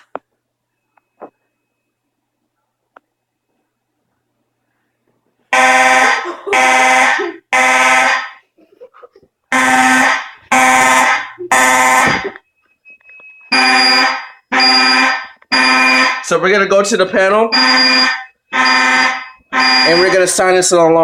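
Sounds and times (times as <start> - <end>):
fire alarm horn blasts: 5.5 - 8.4, 9.5 - 20.8.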